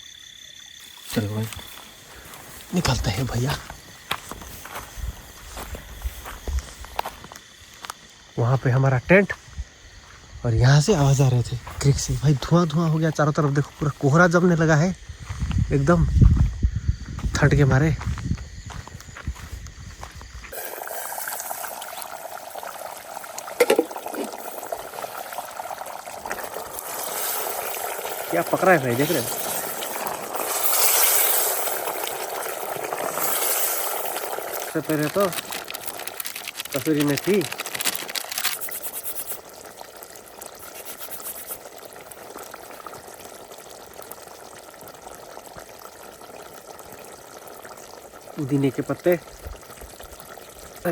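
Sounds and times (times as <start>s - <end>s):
water trickling: 18.7s - 50.9s
gravy bubbling in a pan: 20.5s - 50.9s.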